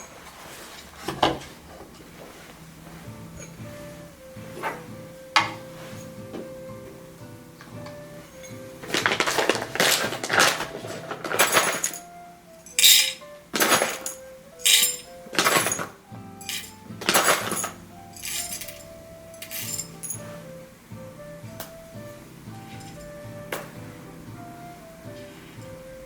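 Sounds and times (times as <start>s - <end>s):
background music: 2.3s - 26.0s
coffee equipment clinking: 8.2s - 20.3s.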